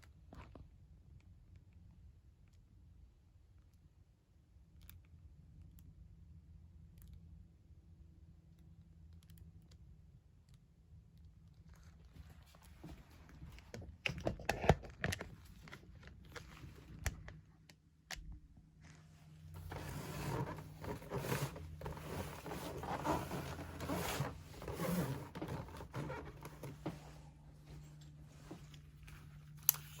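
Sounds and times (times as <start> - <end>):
packaging rustling and scraping: 18.8 - 30.0.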